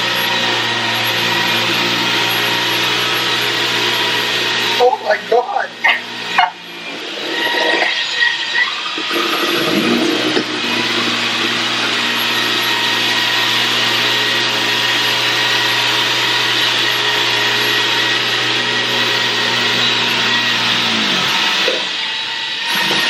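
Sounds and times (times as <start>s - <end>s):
stick vacuum running on carpet: 0.0s - 23.0s.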